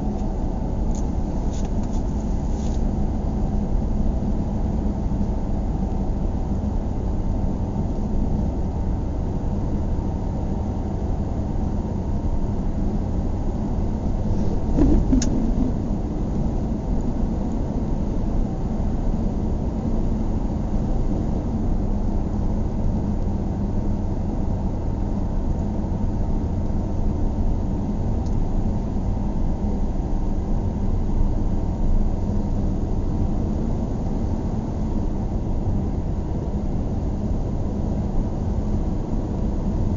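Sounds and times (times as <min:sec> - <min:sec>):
car engine and road noise: 0:00.0 - 0:06.6, 0:10.3 - 0:21.4
brief knock: 0:14.7 - 0:15.7.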